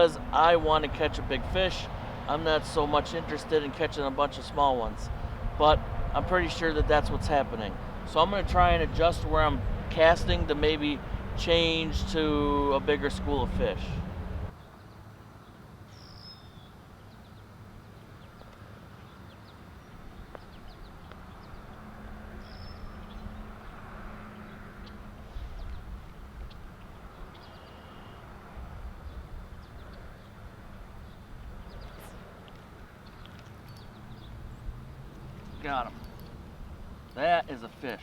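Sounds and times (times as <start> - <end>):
steady low rumble: 4.4 - 14.5.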